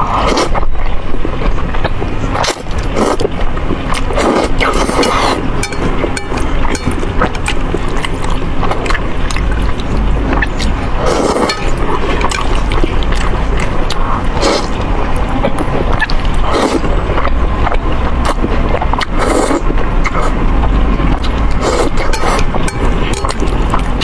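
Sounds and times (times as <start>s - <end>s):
wet chewing: 1.8s - 20.4s, 21.0s - 24.0s
noodle slurps: 4.0s - 5.5s, 21.2s - 22.5s.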